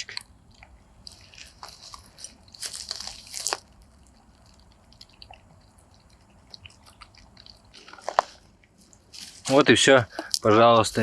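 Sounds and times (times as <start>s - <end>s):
dog eating wet smacking: 3.6s - 9.1s.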